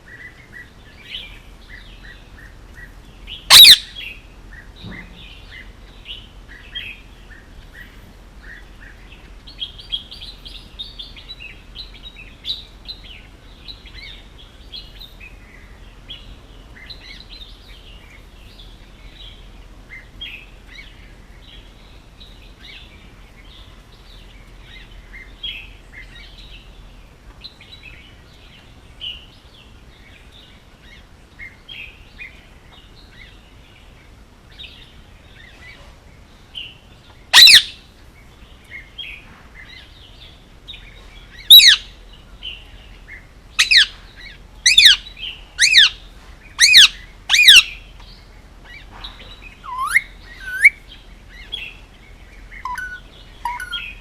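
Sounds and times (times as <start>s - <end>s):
parakeet chirping softly: 3.3s - 4.1s, 43.1s - 47.8s, 48.6s - 51.8s, 52.4s - 54.0s
parakeet loud sharp calls: 3.5s - 4.0s, 37.3s - 37.8s, 41.4s - 41.9s, 43.6s - 43.9s, 44.6s - 46.0s, 46.6s - 47.8s, 49.6s - 50.8s, 52.6s - 54.0s.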